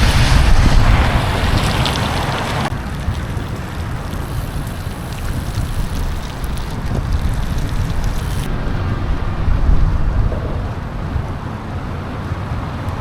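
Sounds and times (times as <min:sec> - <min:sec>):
broad hiss: 0:00.0 - 0:02.7
wind buffeting microphone: 0:00.0 - 0:13.0.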